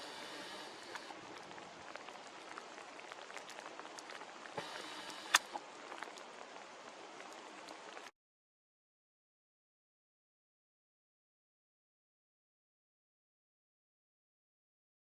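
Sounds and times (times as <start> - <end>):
light rain patter: 0.0 - 8.2.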